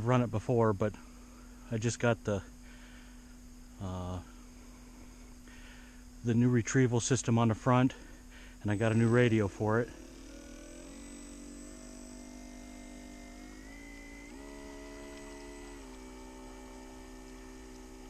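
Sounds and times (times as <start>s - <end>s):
small electric motor humming: 7.9s - 18.0s.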